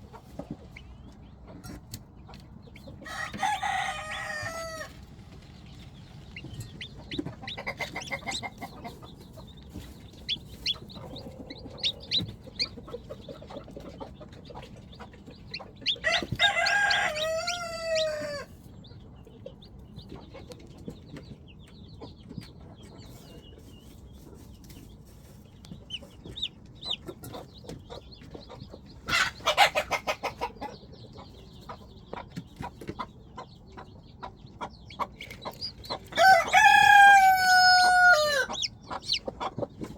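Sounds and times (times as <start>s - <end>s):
chickens clucking: 0.0s - 39.9s
rooster crowing: 3.1s - 4.9s, 16.0s - 18.5s, 36.2s - 38.7s.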